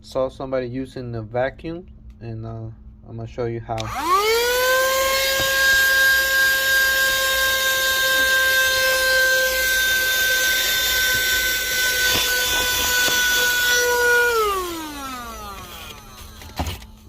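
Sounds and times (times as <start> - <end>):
handheld vacuum motor whining: 3.8 - 17.0.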